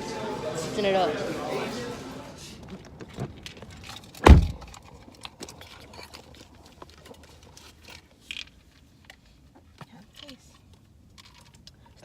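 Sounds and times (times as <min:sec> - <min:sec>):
heavy thump: 0:04.2 - 0:04.7.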